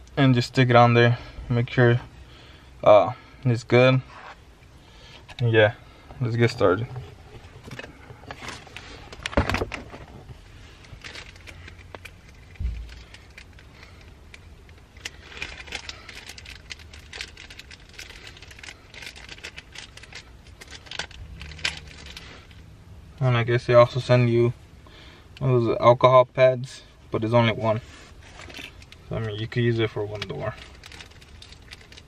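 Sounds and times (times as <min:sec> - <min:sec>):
crinkly packaging rustle: 0:06.4 - 0:22.7, 0:27.5 - 0:32.0
small items clicking and rattling: 0:10.8 - 0:22.6, 0:30.1 - 0:32.0.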